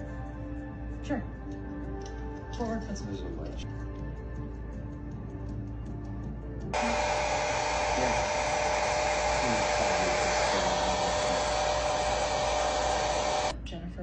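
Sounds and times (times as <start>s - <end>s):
hair dryer blowing: 6.8s - 13.6s.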